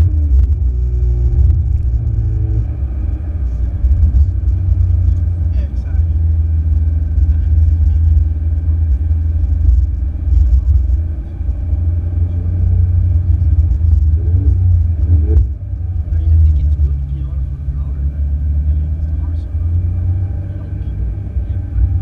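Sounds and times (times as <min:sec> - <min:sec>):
car engine rumble: 0:00.0 - 0:22.0
road noise: 0:00.0 - 0:22.0.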